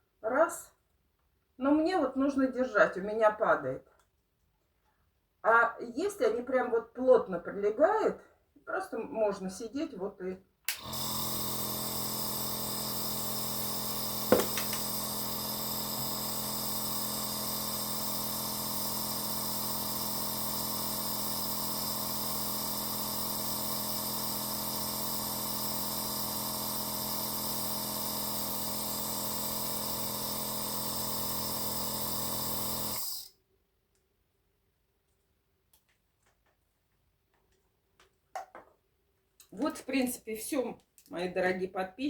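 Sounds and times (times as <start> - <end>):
nebulizer motor humming and hissing: 10.8 - 33.2.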